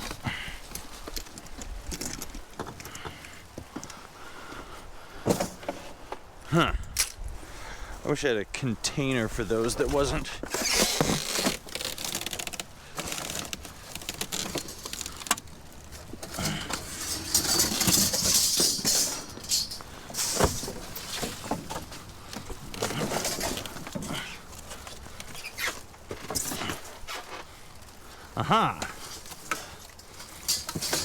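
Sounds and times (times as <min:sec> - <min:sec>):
cardboard rustling and scraping: 0:09.5 - 0:28.0.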